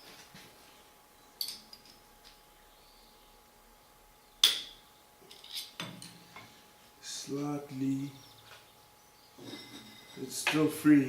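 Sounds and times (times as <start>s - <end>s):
metal tools clinking: 5.2s - 6.1s, 9.4s - 10.8s.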